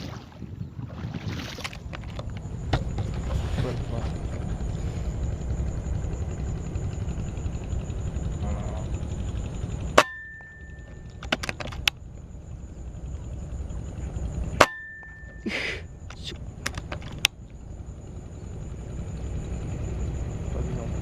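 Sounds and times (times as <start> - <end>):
brief ringing tone: 10.0 - 11.2, 14.6 - 15.5
quick metallic clicks: 16.1 - 17.4.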